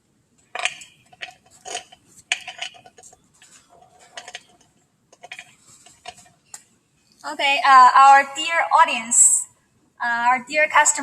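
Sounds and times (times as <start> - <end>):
metal objects clinking: 0.5 - 6.3.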